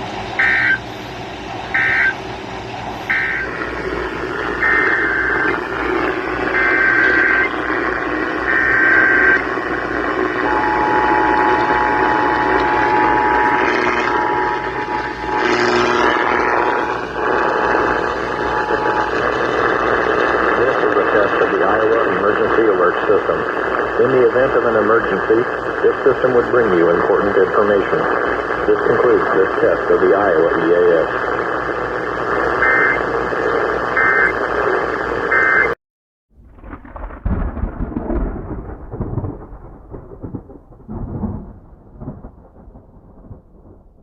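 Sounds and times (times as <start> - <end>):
broadcast static hiss: 0.0 - 35.8
digital data bursts: 0.4 - 0.9, 1.7 - 2.3, 3.0 - 3.8, 4.5 - 31.1, 31.8 - 34.5, 35.3 - 35.8
two-tone attention signal: 0.4 - 0.9, 1.8 - 2.2, 3.0 - 3.5, 4.6 - 5.6, 6.5 - 7.6, 8.5 - 9.4, 10.4 - 16.8, 17.4 - 19.7, 32.6 - 33.0, 34.0 - 34.4, 35.3 - 35.8.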